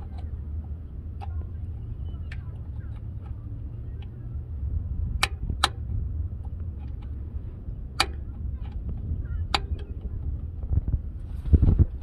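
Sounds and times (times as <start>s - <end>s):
steady low rumble: 0.0s - 12.0s
tools knocking sharp clicks: 8.0s - 8.8s.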